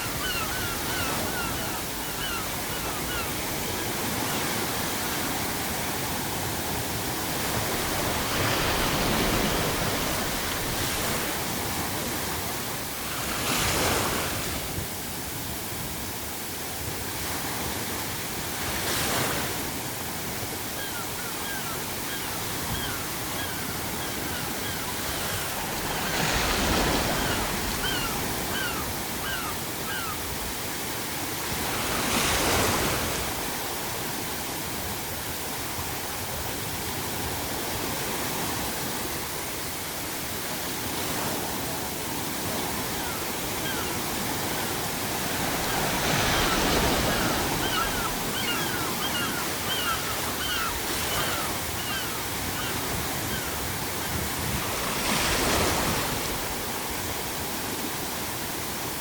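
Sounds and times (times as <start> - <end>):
gulls calling: 0.0 - 5.3, 20.6 - 30.4, 42.6 - 56.1
ocean waves breaking: 0.0 - 59.0.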